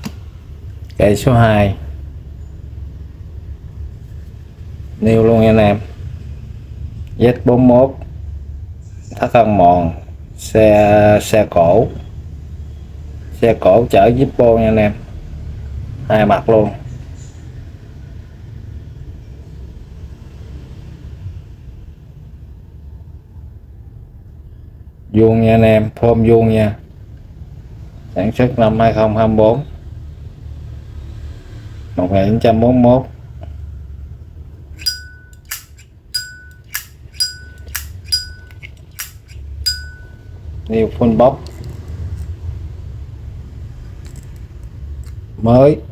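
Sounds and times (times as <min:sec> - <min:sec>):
lighter lid clicking shut: 0:34.8 - 0:40.0
lighter lid ringing open: 0:34.8 - 0:40.2.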